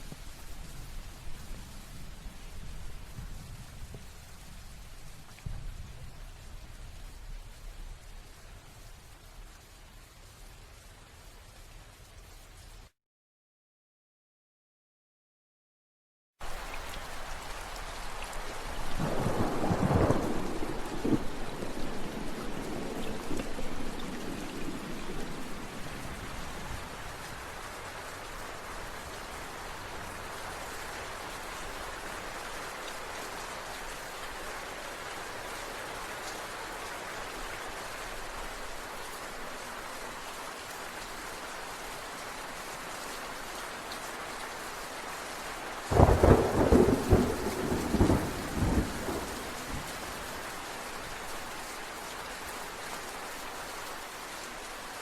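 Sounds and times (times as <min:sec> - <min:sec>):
rain falling: 0:00.0 - 0:12.9, 0:16.4 - 0:55.0
thunder rumbling: 0:18.8 - 0:27.4, 0:45.9 - 0:50.3
loud thunderclap: 0:19.0 - 0:25.9, 0:45.9 - 0:50.1.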